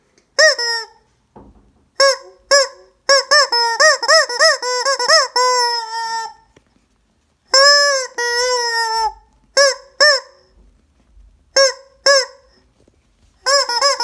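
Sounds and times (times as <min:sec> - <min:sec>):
rubber chicken toy squawking: 0:00.4 - 0:01.1, 0:02.0 - 0:06.5, 0:07.5 - 0:10.5, 0:11.6 - 0:12.6, 0:13.4 - 0:14.0.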